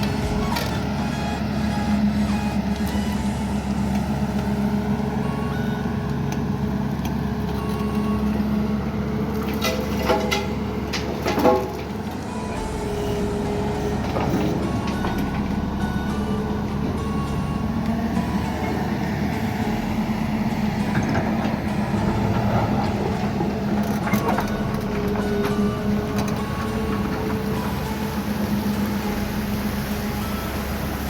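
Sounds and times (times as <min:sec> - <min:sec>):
excavator diesel engine running: 0:00.0 - 0:31.0.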